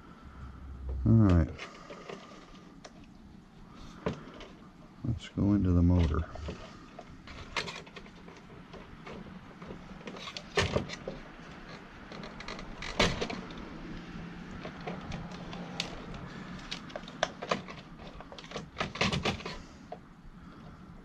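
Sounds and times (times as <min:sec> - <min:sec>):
low steady hum: 0:00.0 - 0:17.0.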